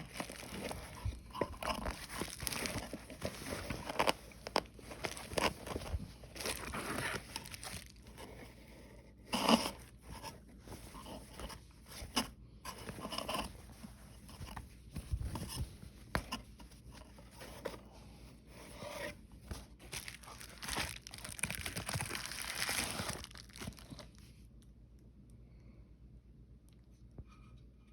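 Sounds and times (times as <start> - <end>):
packaging rustling and tearing: 0.0 - 8.5, 19.6 - 24.3.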